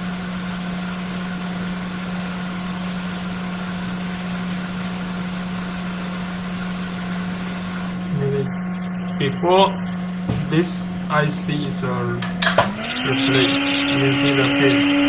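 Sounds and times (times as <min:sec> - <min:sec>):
hot air gun hissing and humming: 0:07.4 - 0:15.0.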